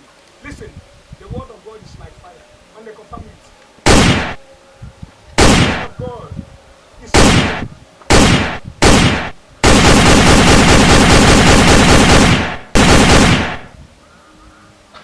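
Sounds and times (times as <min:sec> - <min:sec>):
gunshots: 0:03.9 - 0:04.4, 0:05.4 - 0:06.0, 0:07.2 - 0:13.8
rapid automatic gunfire: 0:03.9 - 0:04.4, 0:05.4 - 0:06.0, 0:07.2 - 0:13.7.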